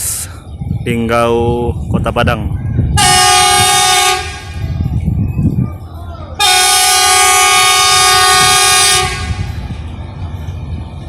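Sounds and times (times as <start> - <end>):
low engine rumble: 0.0 - 11.0
train horn blast: 3.0 - 4.6, 6.4 - 9.6.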